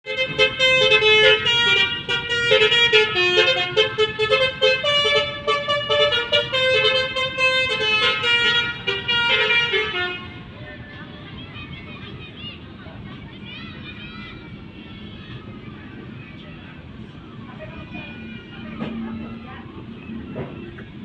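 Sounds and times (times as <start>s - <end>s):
multi-tone air horn melody: 0.0s - 10.4s.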